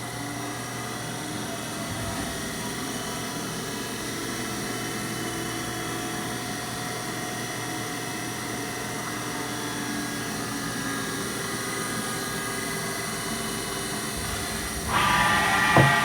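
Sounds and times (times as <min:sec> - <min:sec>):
machine mechanical hum: 0:13.7 - 0:16.0
machine whining tones: 0:14.0 - 0:16.0.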